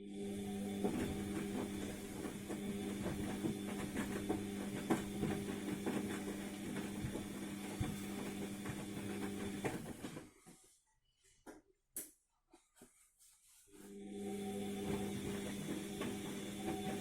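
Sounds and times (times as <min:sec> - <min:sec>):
washing machine motor hum: 0:00.0 - 0:10.5, 0:13.8 - 0:17.0
knocks of tumbling wet laundry: 0:00.4 - 0:10.5, 0:14.6 - 0:17.0.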